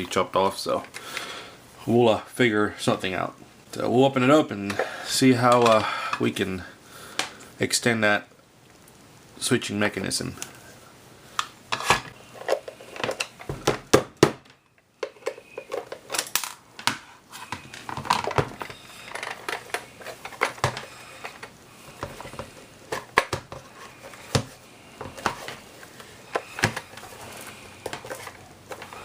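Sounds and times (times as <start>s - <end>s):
plastic parts clicking and rattling: 11.4s - 29.0s.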